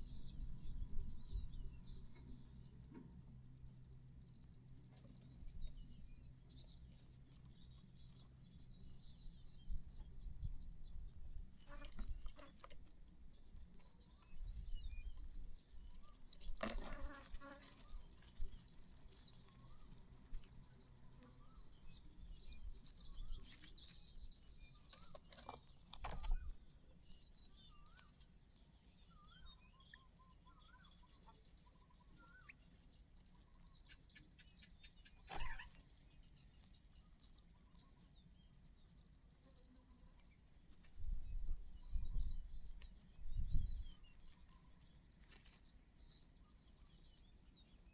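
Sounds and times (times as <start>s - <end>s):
nestling birds cheeping: 11.7s - 47.9s.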